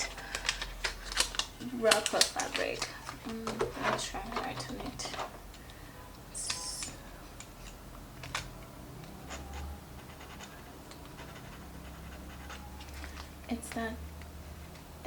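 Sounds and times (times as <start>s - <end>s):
pen scratching on sticker sheet: 9.2s - 13.0s.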